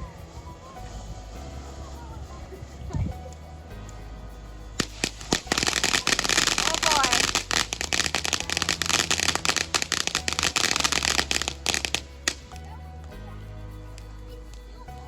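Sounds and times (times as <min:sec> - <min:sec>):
background music: 0:00.0 - 0:15.0
sharp firework crack: 0:04.8 - 0:12.4
fireworks crackling: 0:04.8 - 0:12.6.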